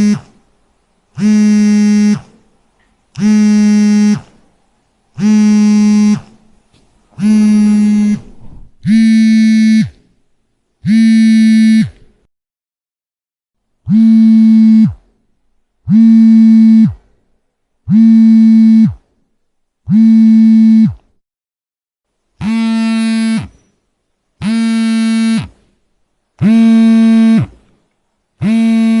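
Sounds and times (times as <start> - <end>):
mobile phone vibrating: 0.0 - 0.4, 1.2 - 2.4, 3.2 - 4.4, 5.2 - 6.4, 7.2 - 10.2, 10.8 - 12.2, 13.9 - 15.2, 15.9 - 17.1, 17.9 - 19.1, 19.9 - 21.0, 22.4 - 23.7, 24.4 - 25.7, 26.4 - 27.7, 28.4 - 29.0.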